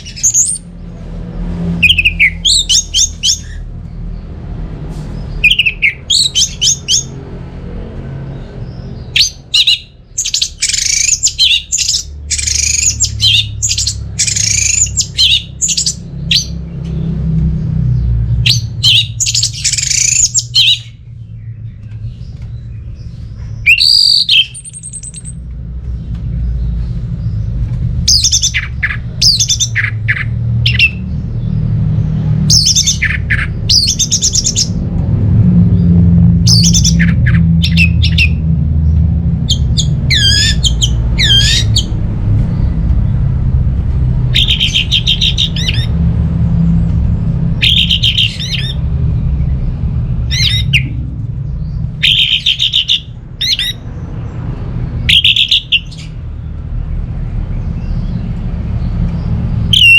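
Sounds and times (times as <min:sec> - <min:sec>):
thrush singing: 0:00.0 - 0:17.4, 0:18.4 - 0:21.0, 0:28.1 - 0:31.1, 0:32.3 - 0:49.1, 0:49.8 - 0:56.2, 0:59.6 - 0:59.9
steady low hum: 0:24.5 - 0:59.8.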